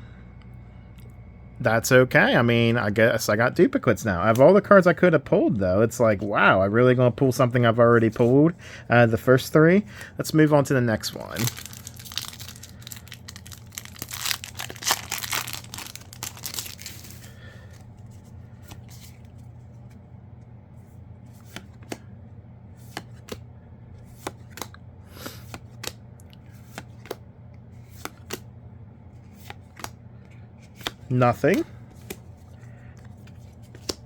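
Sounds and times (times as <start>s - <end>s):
wrapper tearing and crinkling: 11.3s - 17.3s
cards clicking and snapping: 11.4s - 17.3s, 24.2s - 24.8s, 25.4s - 27.2s, 27.8s - 28.4s, 29.3s - 30.0s, 30.7s - 32.2s, 33.0s - 34.0s.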